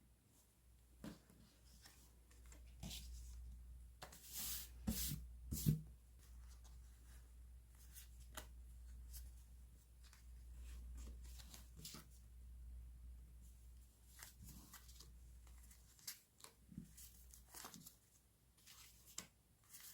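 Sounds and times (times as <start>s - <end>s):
paper rustling and crinkling: 14.1s - 19.9s.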